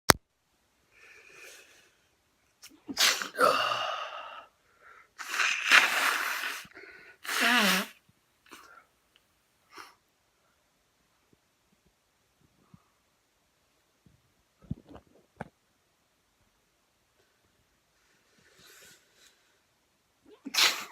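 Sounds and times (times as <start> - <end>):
faint breaths: 0.8 - 2.2, 3.5 - 5.2, 6.5 - 7.3
man sneezing: 2.9 - 4.4, 5.2 - 8.0, 20.3 - 20.9.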